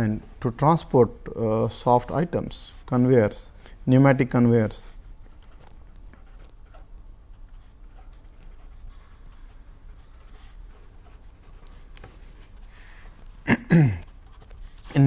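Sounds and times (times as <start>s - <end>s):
pen scratching on paper: 5.3s - 15.0s.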